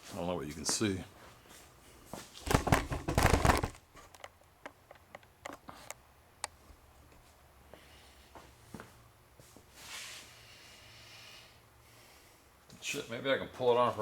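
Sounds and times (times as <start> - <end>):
rustling crackling handling noise: 2.3 - 4.4.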